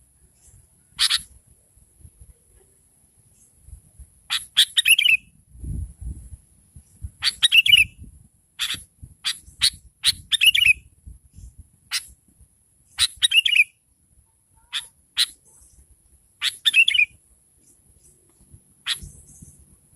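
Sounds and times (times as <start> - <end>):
bulbul chirping calls: 0.4 - 1.3, 4.3 - 5.3, 7.2 - 8.0, 8.6 - 10.8, 12.9 - 13.8, 14.6 - 15.8, 16.4 - 18.2, 18.8 - 19.6.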